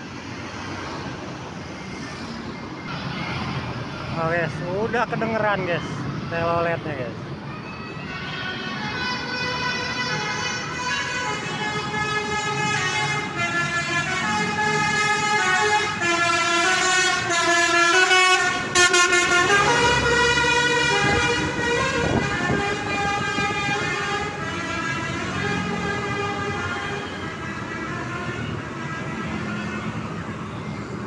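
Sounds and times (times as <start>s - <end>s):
bus horn playing melody: 8.1s - 30.1s
bus engine running: 8.7s - 31.0s.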